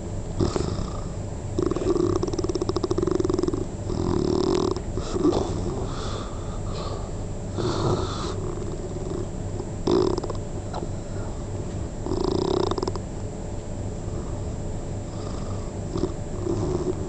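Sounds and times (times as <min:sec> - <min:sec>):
person snoring: 0:00.4 - 0:10.4, 0:12.0 - 0:13.0, 0:15.1 - 0:17.0.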